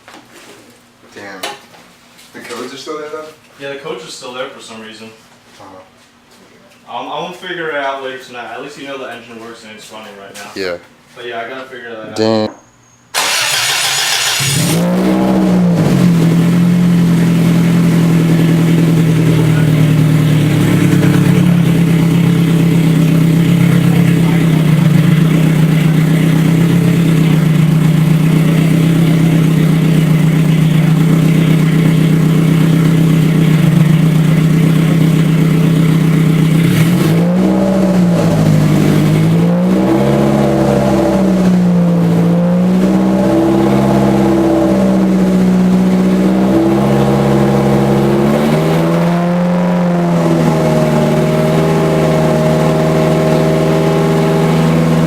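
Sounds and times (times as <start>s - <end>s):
car engine revving: 13.2s - 55.0s.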